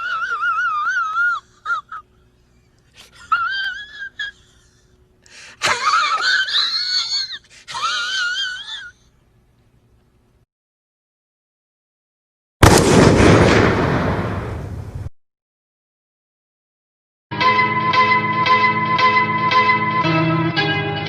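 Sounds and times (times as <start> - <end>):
high-pitched whining cries: 0.0 - 5.0, 5.6 - 9.1.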